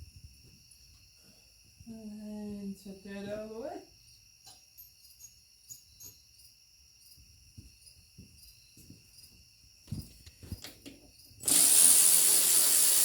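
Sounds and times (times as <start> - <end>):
power ratchet whirring: 11.4 - 13.0.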